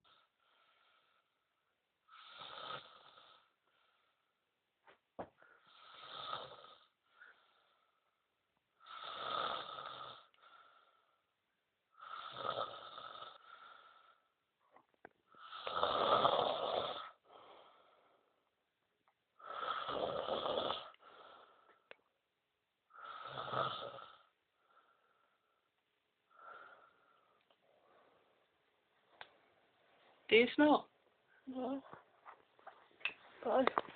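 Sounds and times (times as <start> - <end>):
person snoring: 2.1 - 3.5, 5.6 - 6.9, 8.8 - 10.3, 12.0 - 14.2, 15.4 - 17.7, 19.4 - 21.5, 22.9 - 24.3.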